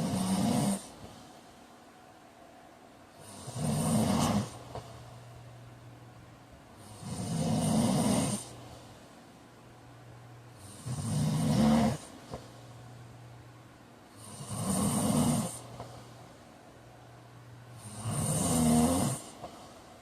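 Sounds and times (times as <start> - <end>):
man snoring: 0.0 - 1.0, 3.2 - 4.7, 6.8 - 8.6, 10.6 - 12.2, 14.2 - 15.8, 17.7 - 19.5
steady low hum: 0.0 - 20.0.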